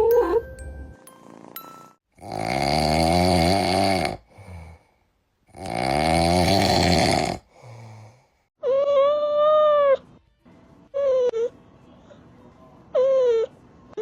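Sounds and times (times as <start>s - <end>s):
cat snoring: 1.2s - 4.7s, 5.5s - 7.4s
quiet breath: 7.5s - 8.5s.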